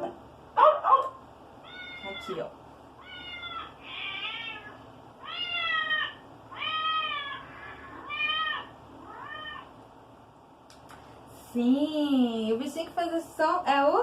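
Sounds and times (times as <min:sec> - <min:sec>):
cat meowing: 0:01.6 - 0:02.4, 0:03.0 - 0:09.7.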